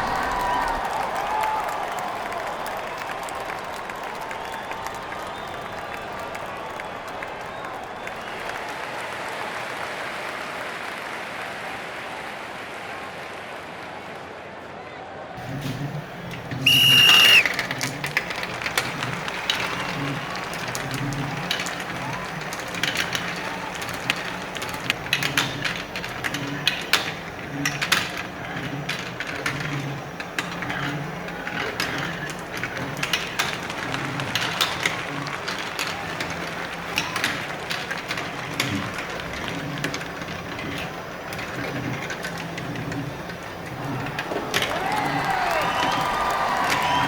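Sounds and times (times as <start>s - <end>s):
marbles clicking together: 16.6s - 43.0s.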